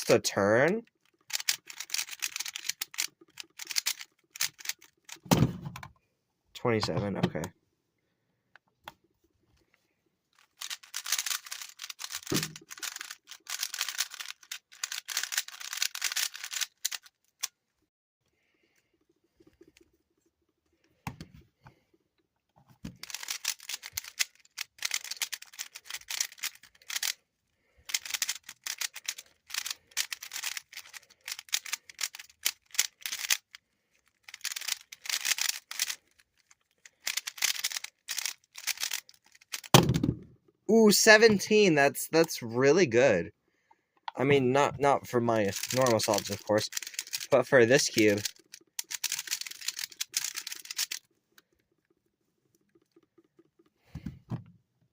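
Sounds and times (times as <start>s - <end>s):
puzzle cube clacking: 0.8s - 5.3s, 10.4s - 17.5s, 22.8s - 27.2s, 27.8s - 40.0s, 44.0s - 51.8s.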